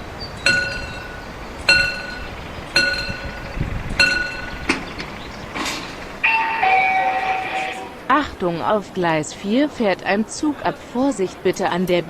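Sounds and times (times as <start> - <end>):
bell ringing: 0.5 - 4.8, 6.2 - 8.0.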